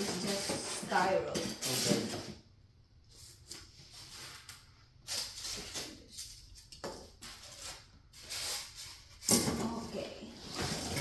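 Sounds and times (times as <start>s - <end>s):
packing material rustling and scraping: 3.1s - 11.0s.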